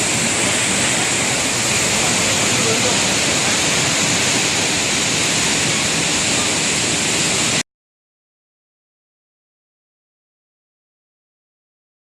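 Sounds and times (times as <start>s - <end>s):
waterfall rushing: 0.0s - 7.6s.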